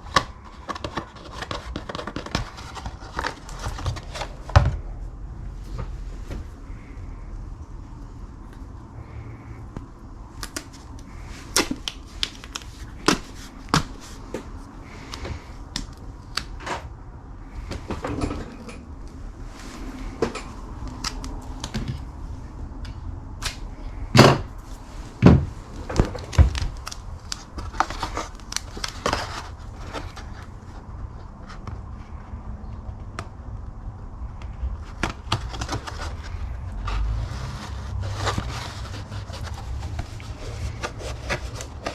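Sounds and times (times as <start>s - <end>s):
plastic and tape handling clicks: 9.8s - 14.4s, 20.3s - 22.1s, 25.8s - 30.5s.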